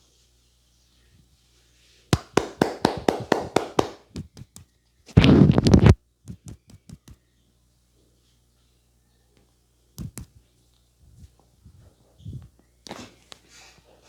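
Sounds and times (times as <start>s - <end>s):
fast tapping on a head: 2.1s - 7.2s, 10.0s - 10.3s
hands slapping a head: 2.1s - 7.2s, 10.0s - 10.3s.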